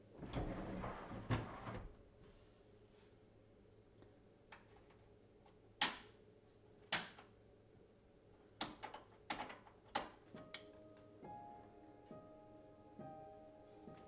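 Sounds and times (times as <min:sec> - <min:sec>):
faint room hum: 0:00.0 - 0:14.0.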